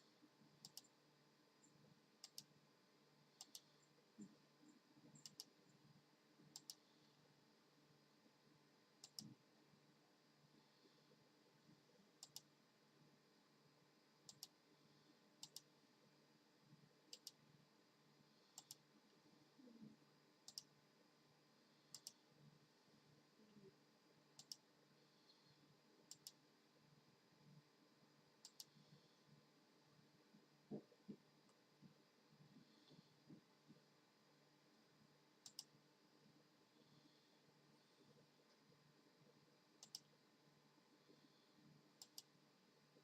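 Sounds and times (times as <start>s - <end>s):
faint double clicks: 3.4s - 3.7s, 20.5s - 20.7s, 24.4s - 24.7s, 39.8s - 40.1s.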